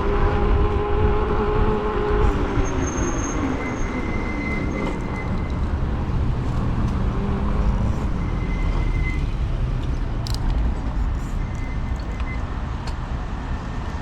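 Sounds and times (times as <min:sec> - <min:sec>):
wind buffeting microphone: 0:00.0 - 0:08.4
passing road traffic: 0:00.0 - 0:14.0.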